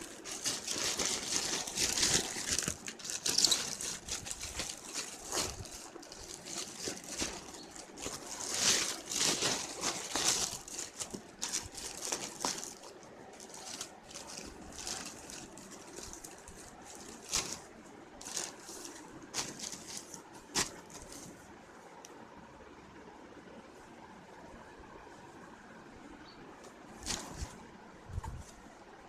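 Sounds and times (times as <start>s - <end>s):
packaging crinkling and rustling: 0.0s - 21.4s, 27.0s - 27.6s.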